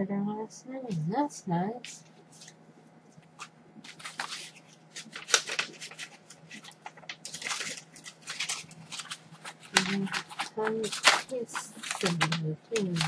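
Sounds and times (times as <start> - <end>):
paper packaging rustling: 3.2 - 13.0.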